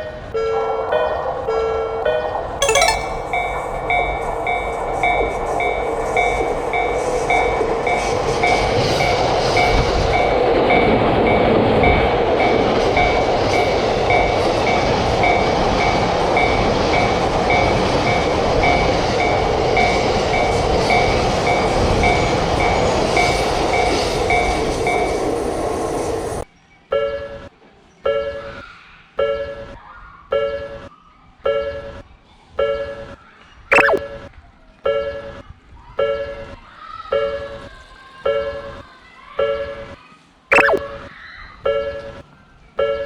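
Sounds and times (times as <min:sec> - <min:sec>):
railroad crossing bell ringing: 0:00.0 - 0:03.4.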